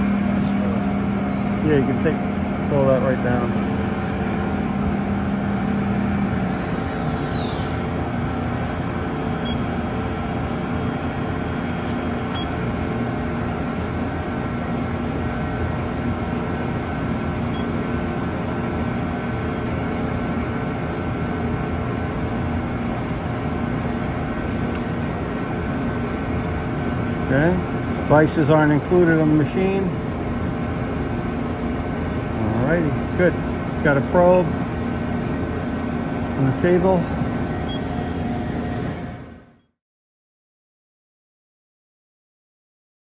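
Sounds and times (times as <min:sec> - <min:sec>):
steady machine hum: 0:00.0 - 0:39.7
low steady machine tone: 0:00.0 - 0:39.8
high machine whines falling: 0:03.5 - 0:07.9, 0:18.7 - 0:35.4.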